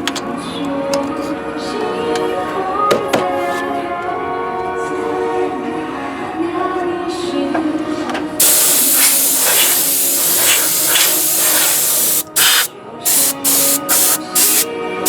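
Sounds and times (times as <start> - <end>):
music: 0.0 - 15.0
pressurised spray hissing: 8.4 - 14.7.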